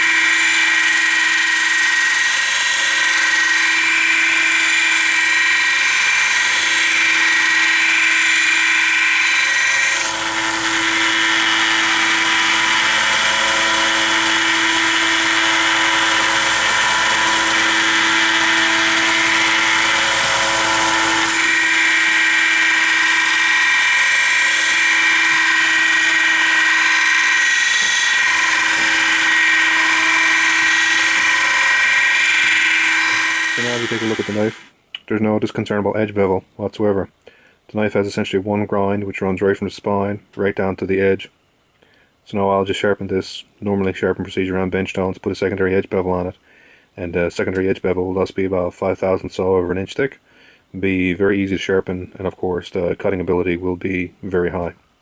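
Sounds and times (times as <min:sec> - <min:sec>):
belt grinder grinding steel: 0:00.0 - 0:34.8.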